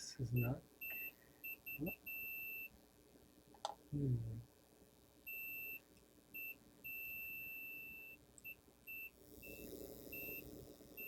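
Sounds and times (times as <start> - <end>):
multimeter beeping: 0.4 - 2.7, 5.3 - 5.8, 6.4 - 11.0.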